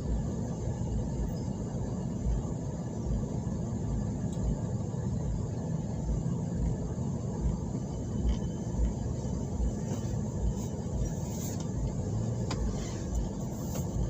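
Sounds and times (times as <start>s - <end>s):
vehicle engine low rumble: 0.0s - 14.0s.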